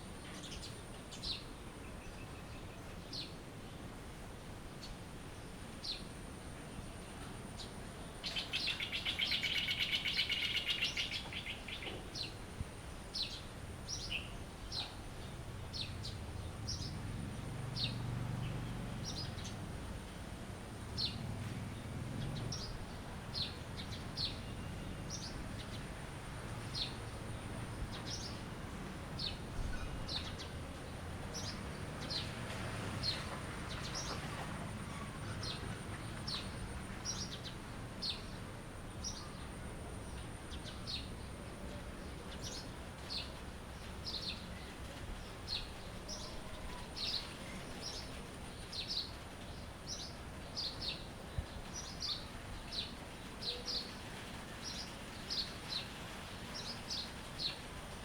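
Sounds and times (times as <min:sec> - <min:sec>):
birds chirping: 0:07.6 - 0:12.4.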